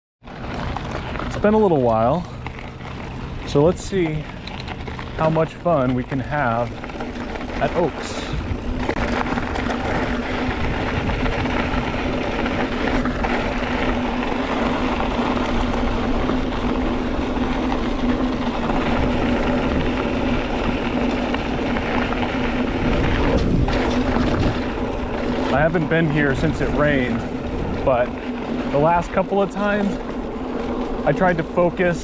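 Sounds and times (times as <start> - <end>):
bicycle wheels humming: 0.2 - 32.0
wind noise: 6.3 - 29.2.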